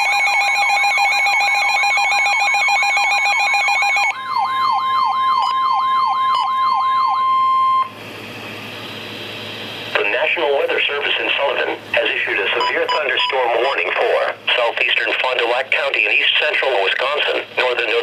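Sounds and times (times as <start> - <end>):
emergency alert siren tone: 0.0 - 8.0
radio static: 9.9 - 18.0.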